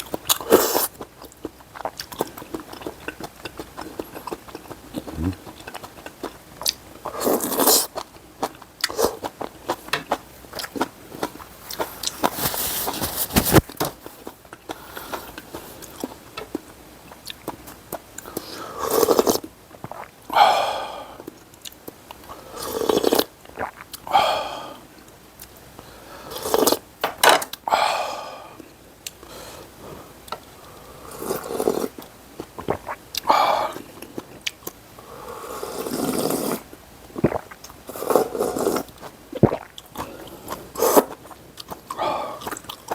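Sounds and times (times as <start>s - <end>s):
person chewing: 0.0s - 20.4s, 21.2s - 24.2s, 30.2s - 34.8s, 35.4s - 42.9s
loud slurping of noodles: 7.1s - 7.9s, 18.4s - 19.4s, 22.5s - 24.6s, 30.9s - 32.0s, 35.1s - 41.2s.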